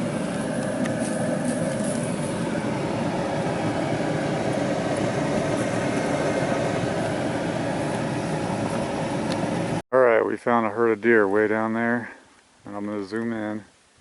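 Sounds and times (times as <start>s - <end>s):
vehicle engine and road noise: 0.0s - 9.8s.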